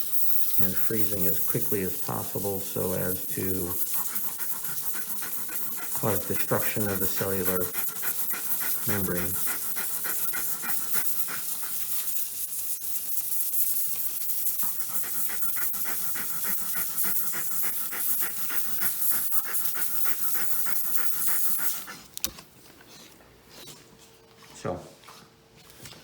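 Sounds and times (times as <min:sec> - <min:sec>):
hiss of gas jet: 0:00.0 - 0:22.0
dog panting rapidly: 0:00.1 - 0:22.2.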